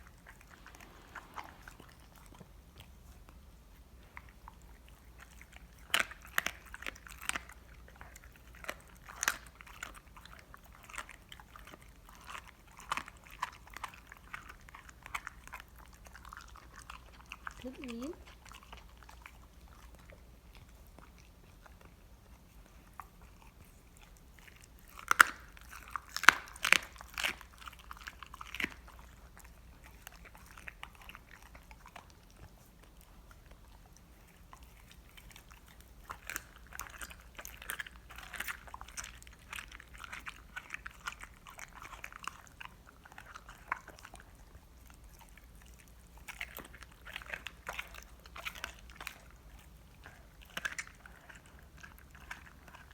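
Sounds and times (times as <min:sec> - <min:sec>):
dog chewing bones: 0:00.0 - 0:52.9.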